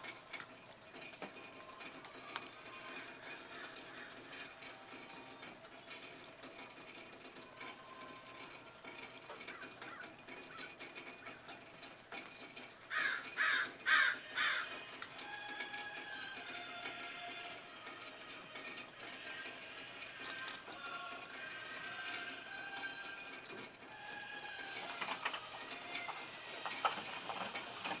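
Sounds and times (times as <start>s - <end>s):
small birds chirping: 0.0s - 6.3s, 7.6s - 11.6s
harsh loud bird calls: 7.7s - 11.4s, 12.9s - 14.8s.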